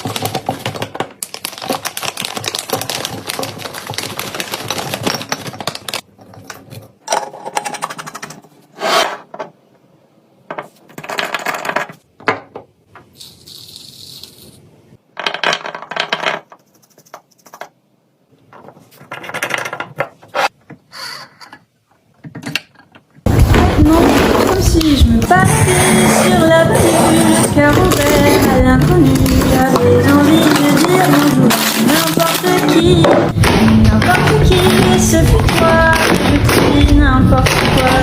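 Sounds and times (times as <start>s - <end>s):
food containers clattering and clinking: 27.4s - 38.0s.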